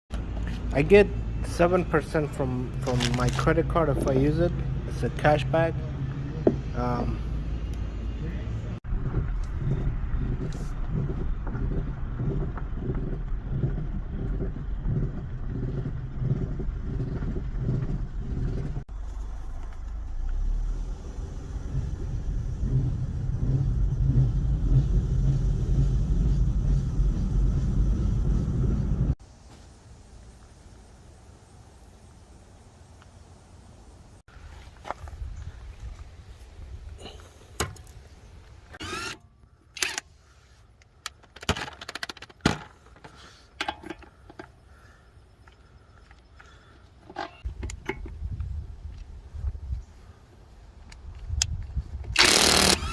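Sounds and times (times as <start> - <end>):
car road and engine rumble: 0.1 - 39.2
handling clicks and knocks: 41.0 - 44.6.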